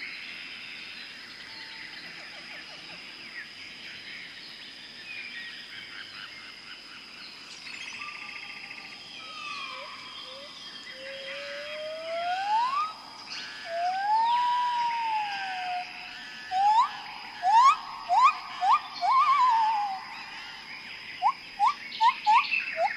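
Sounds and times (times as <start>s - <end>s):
insect drone: 0.0s - 22.9s
birds calling: 9.2s - 22.9s
bird whistles: 9.3s - 15.8s, 16.5s - 20.0s, 21.2s - 22.9s
loud quick rising bird whistles: 9.4s - 13.0s, 16.5s - 20.0s.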